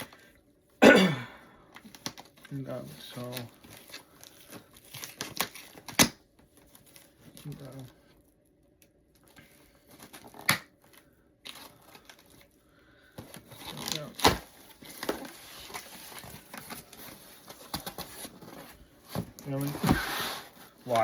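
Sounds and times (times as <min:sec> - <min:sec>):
packing material crinkling: 0:13.2 - 0:18.7
cardboard tearing: 0:13.4 - 0:18.7.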